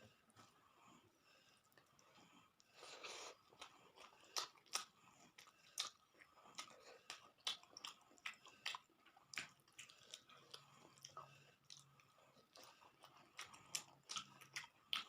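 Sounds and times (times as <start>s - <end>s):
person chewing food: 0.3s - 15.0s.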